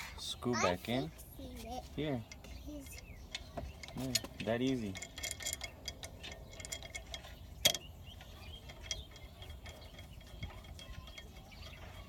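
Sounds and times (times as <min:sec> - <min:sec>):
ratchet wrench clicking: 0:02.8 - 0:07.8.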